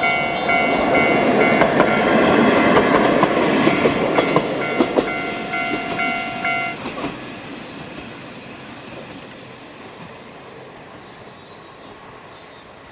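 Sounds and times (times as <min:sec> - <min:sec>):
level crossing warning bell: 0:00.0 - 0:07.1
diesel railcar running: 0:00.0 - 0:12.9
insects chirping: 0:00.0 - 0:12.9.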